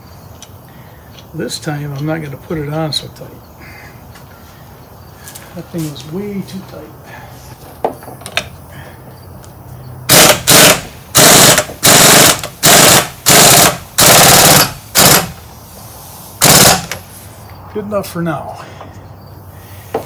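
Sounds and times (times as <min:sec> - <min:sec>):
impact wrench hammering: 0:10.1 - 0:15.4, 0:16.4 - 0:17.0.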